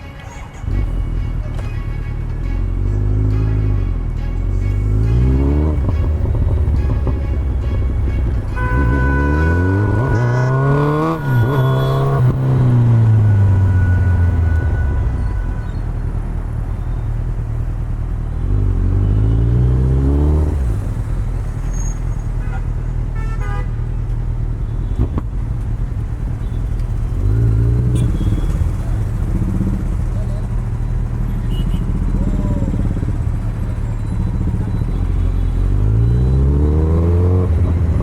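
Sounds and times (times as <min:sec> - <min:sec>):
motorcycle engine revving: 0:04.5 - 0:21.7, 0:26.6 - 0:38.0.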